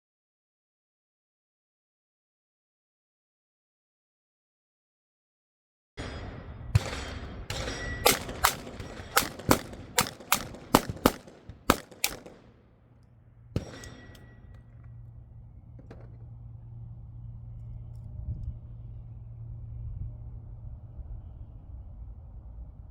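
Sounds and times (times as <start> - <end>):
steady low hum: 6.0 - 22.9
rapid gunfire: 6.8 - 12.6.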